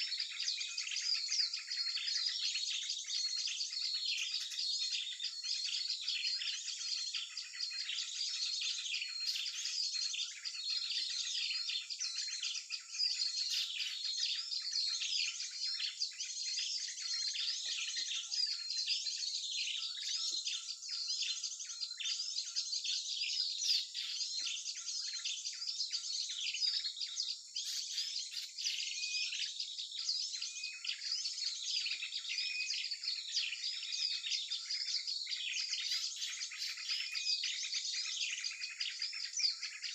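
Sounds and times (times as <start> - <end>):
small songbirds chorus: 0.0 - 39.9.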